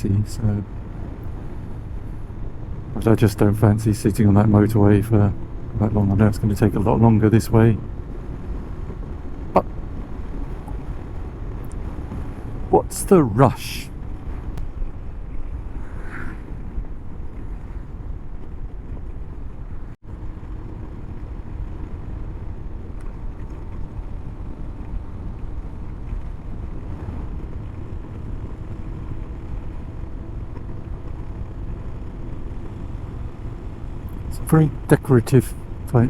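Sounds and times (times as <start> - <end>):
wind and road noise: 0.0 - 36.0
motorcycle engine running: 13.9 - 36.0.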